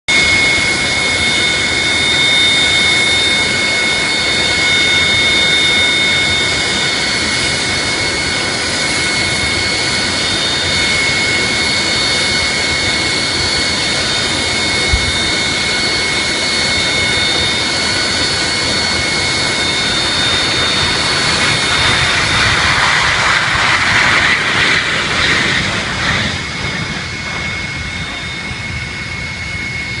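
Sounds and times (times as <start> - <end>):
airliner engine whine: 0.1 - 30.0
broad rushing noise: 12.8 - 29.0.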